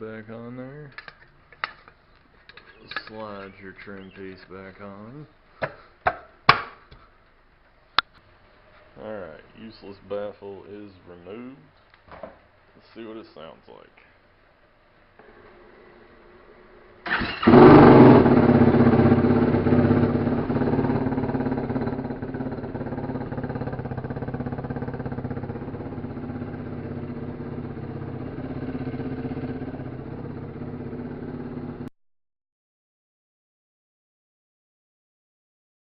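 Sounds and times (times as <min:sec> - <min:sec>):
engine starting and idling: 0:15.2 - 0:26.0.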